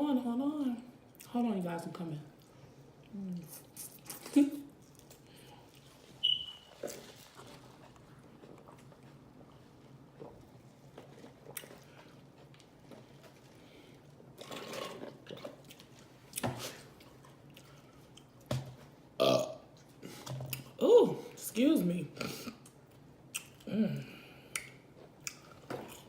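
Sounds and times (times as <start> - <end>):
room hum: 0.0 - 26.0
person chewing and smacking: 6.8 - 13.6, 15.2 - 18.5, 22.6 - 23.7, 24.5 - 26.0.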